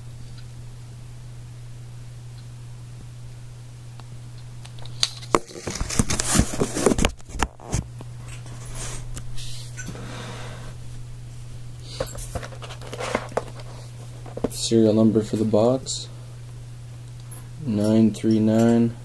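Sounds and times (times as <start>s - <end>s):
steady low hum: 0.0s - 19.0s
packaging crinkling and rustling: 4.8s - 9.1s, 12.1s - 14.6s.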